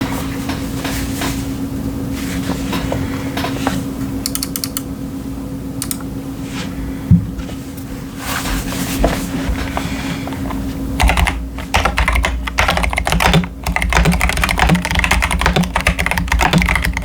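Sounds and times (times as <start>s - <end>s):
steady low hum: 0.0s - 17.0s
mechanical keyboard keystrokes: 4.2s - 4.9s, 5.8s - 6.0s, 11.0s - 17.0s.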